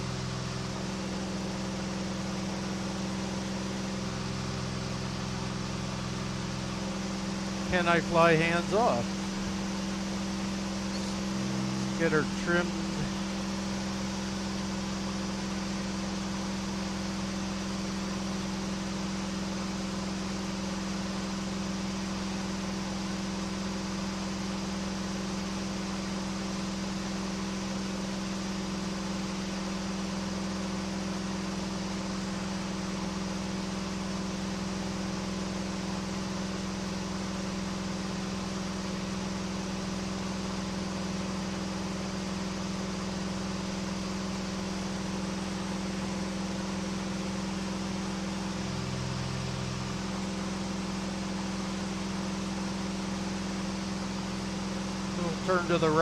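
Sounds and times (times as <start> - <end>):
airplane engine drone: 0.0 - 19.0, 44.1 - 52.6, 55.0 - 56.0.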